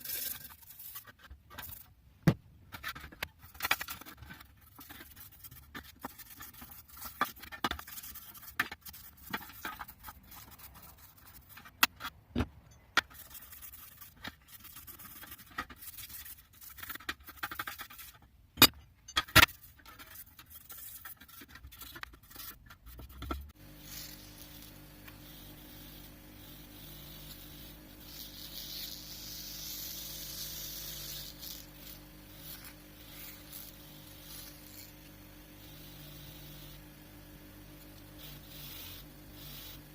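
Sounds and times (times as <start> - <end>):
wire brush scraping metal: 0.0 - 1.9
small electric motor humming: 23.6 - 39.9.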